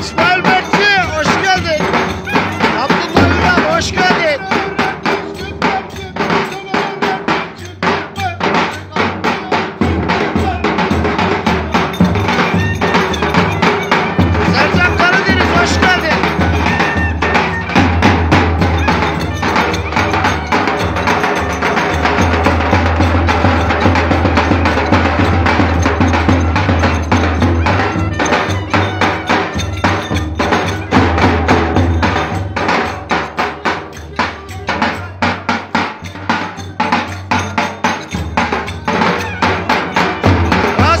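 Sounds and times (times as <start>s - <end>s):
clacking percussion: 0.0s - 41.0s
lively dance music: 10.4s - 41.0s.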